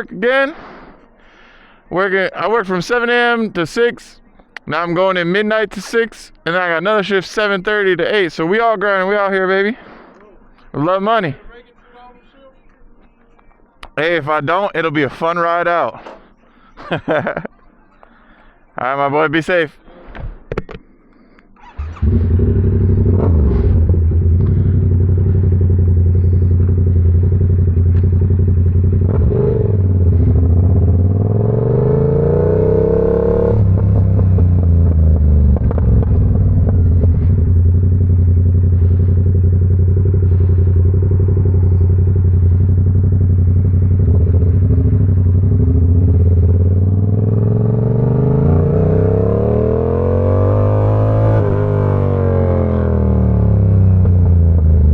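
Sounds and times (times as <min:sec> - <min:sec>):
motorcycle engine revving: 0:21.6 - 0:54.9.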